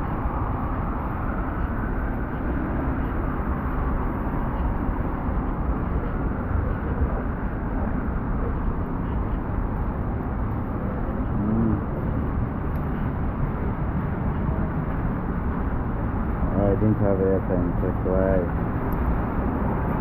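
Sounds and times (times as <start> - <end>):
road traffic rumble: 0.0 - 20.0
faint voice: 11.2 - 12.0.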